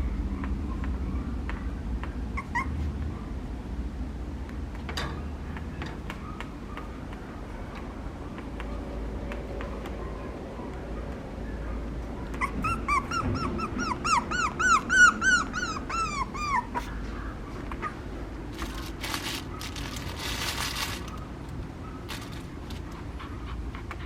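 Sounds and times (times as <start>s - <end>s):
puppy yipping whimpers: 2.3s - 2.9s, 12.2s - 18.0s
rustling: 18.5s - 23.0s.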